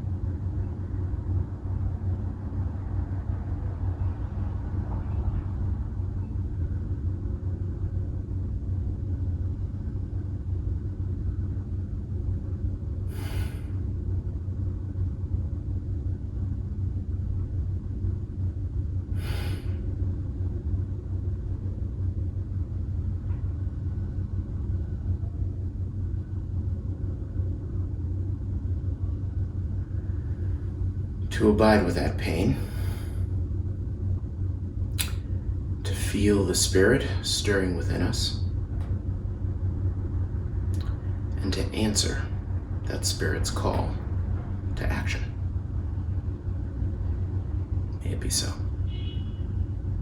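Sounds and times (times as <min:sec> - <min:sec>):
low rumble: 0:00.0 - 0:50.0
short hisses: 0:13.1 - 0:13.8, 0:19.2 - 0:19.8, 0:32.6 - 0:33.2.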